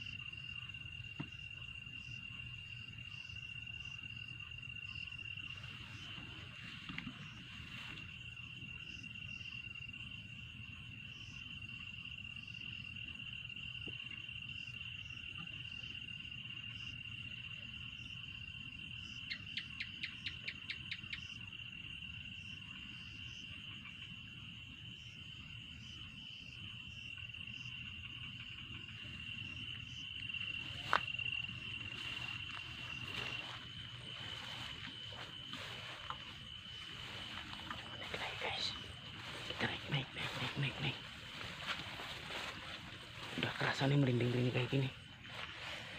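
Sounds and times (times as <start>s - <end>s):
insect trilling: 26.0s - 45.9s.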